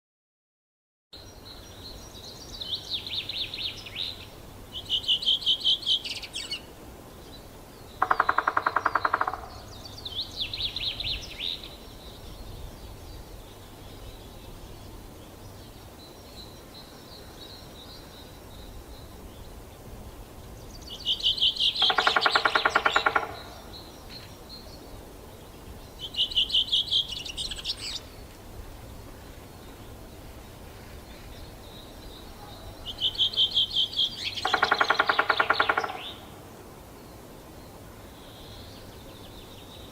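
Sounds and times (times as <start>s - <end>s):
songbirds trilling: 1.2s - 39.9s
woodpecker drumming on a tree: 8.0s - 9.8s, 21.2s - 24.3s, 34.2s - 36.4s.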